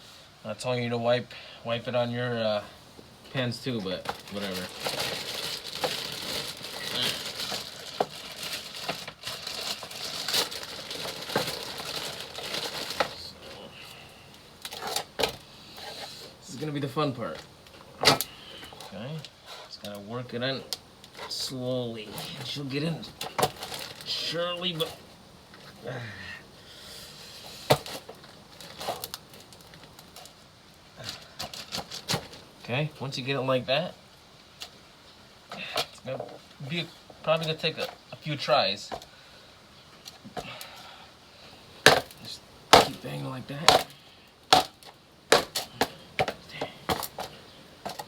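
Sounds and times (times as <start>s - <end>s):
hands rustling crinkly material: 1.7s - 39.2s, 41.4s - 48.0s
rubber handling knocks: 41.8s - 43.0s, 44.6s - 48.0s.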